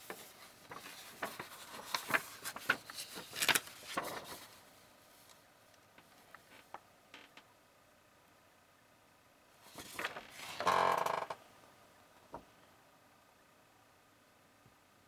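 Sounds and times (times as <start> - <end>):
handling rustling and scraping: 0.0 - 5.4, 9.6 - 10.8.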